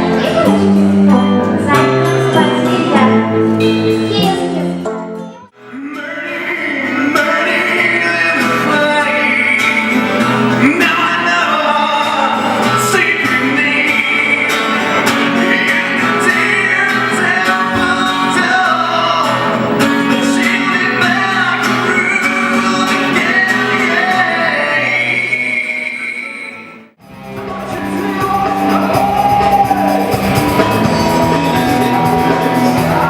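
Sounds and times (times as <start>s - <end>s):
guitar playing: 0.0s - 33.0s
man singing: 5.6s - 33.0s.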